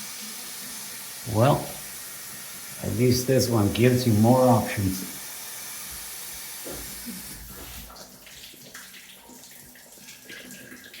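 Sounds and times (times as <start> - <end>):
shower spraying water: 0.0 - 11.0.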